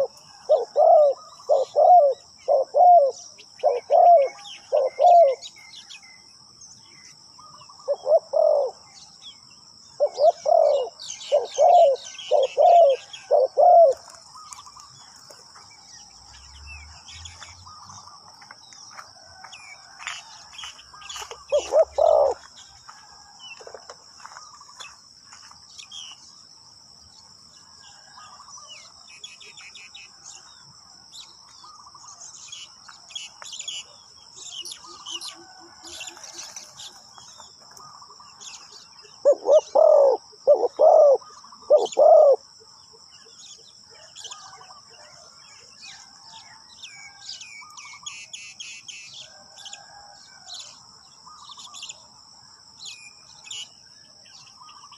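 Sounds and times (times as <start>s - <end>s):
dove cooing: 0.0s - 5.5s, 7.4s - 9.0s, 10.0s - 14.8s, 21.2s - 22.5s, 39.1s - 42.5s
small birds chirping: 0.0s - 30.6s, 52.8s - 54.9s.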